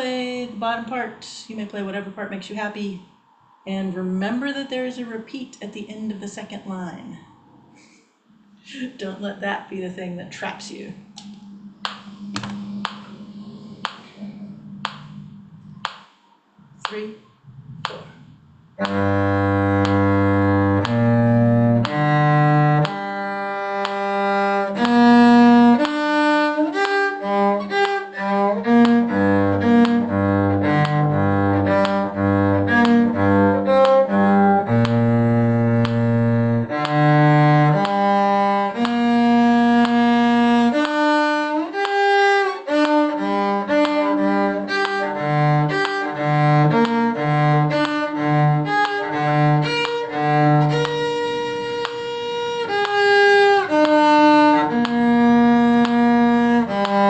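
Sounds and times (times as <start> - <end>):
bowed strings playing a tune: 18.8 - 57.0.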